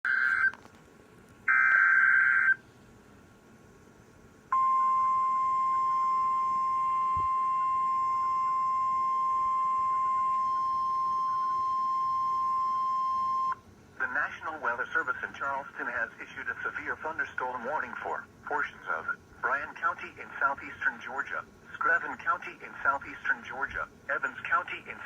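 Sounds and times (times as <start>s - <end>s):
warbling digital data tones: 0.1s - 0.6s
steady high alert beep: 4.6s - 13.6s.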